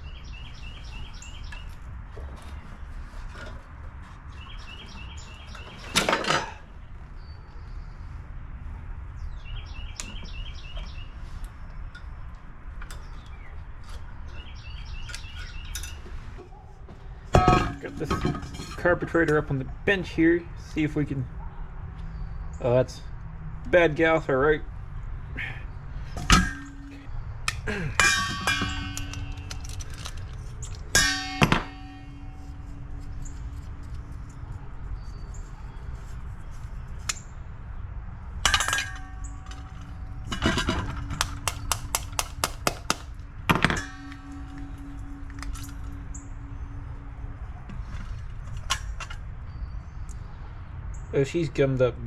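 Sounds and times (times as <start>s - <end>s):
metal parts clanking on workbench: 5.8s - 6.6s, 17.3s - 19.0s, 28.0s - 32.6s, 38.5s - 41.8s, 43.5s - 46.2s
sharp ringing knocks: 17.3s - 18.6s, 26.2s - 27.2s, 28.0s - 29.8s, 30.9s - 33.7s, 38.4s - 49.6s.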